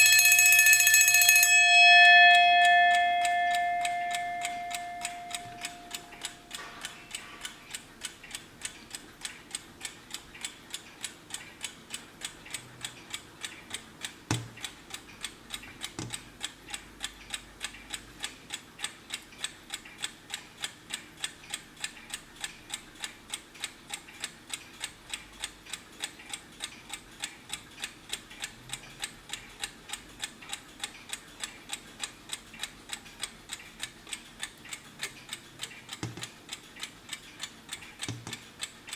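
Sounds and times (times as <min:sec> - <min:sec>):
clock bell tone: 0:00.0 - 0:07.4
alarm clock ticking: 0:00.0 - 0:38.9.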